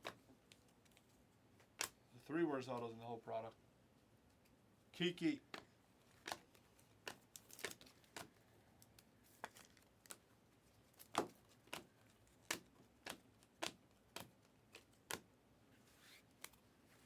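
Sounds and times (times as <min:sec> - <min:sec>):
trading cards tapping and flicking: 0:05.4 - 0:08.4, 0:11.0 - 0:15.3.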